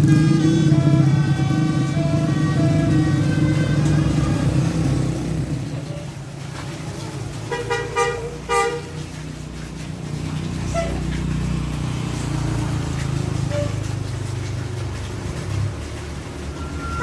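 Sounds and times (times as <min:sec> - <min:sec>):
bus horn melody: 0:00.0 - 0:05.2, 0:07.5 - 0:09.0, 0:16.6 - 0:17.0
bus engine under load: 0:00.0 - 0:17.0
short horn toots: 0:07.5 - 0:09.0.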